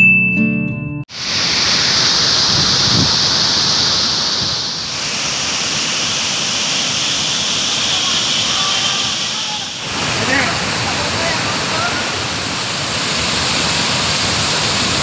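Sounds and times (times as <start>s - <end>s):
guitar music: 0.0s - 1.1s
waterfall rushing: 1.1s - 15.0s.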